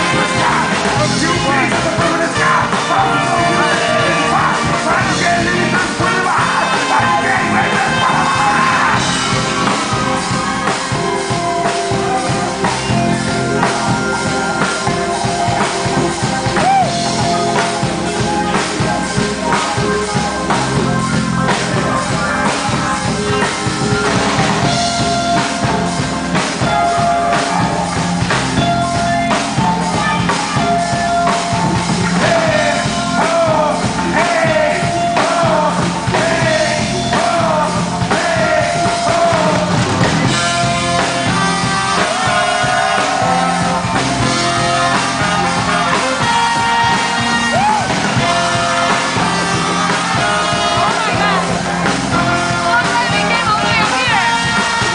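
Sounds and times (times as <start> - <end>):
melody of held notes: 0.0 - 54.9
samba drumming: 20.6 - 54.9.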